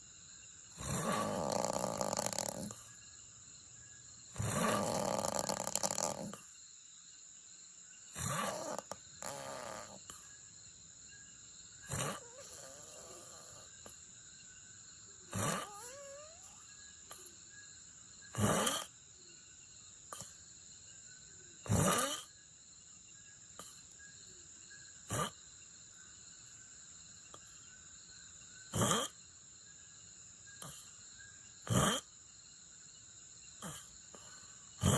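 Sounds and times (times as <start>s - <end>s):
person snoring: 0.8s - 2.8s, 4.4s - 6.4s, 8.2s - 10.1s, 11.9s - 13.7s, 15.3s - 17.3s, 18.4s - 18.9s, 21.7s - 22.3s, 33.6s - 34.9s.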